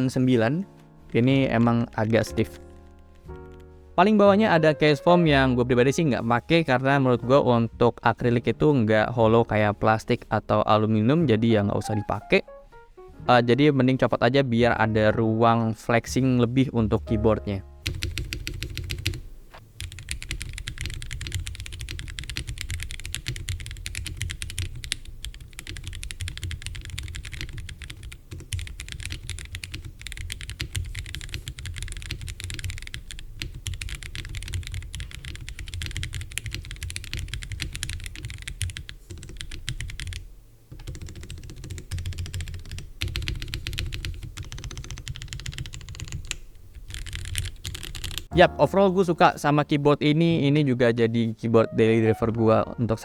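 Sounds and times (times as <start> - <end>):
typing on mechanical keyboard: 17.9 - 19.2, 19.8 - 48.3.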